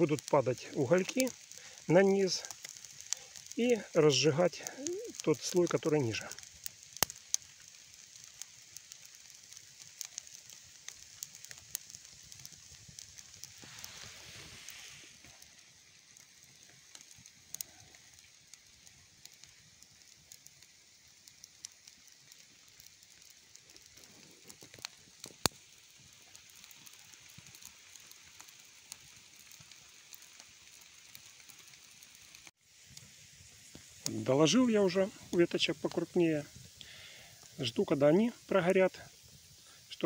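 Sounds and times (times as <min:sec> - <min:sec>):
campfire crackling and popping: 0:00.0 - 0:40.0.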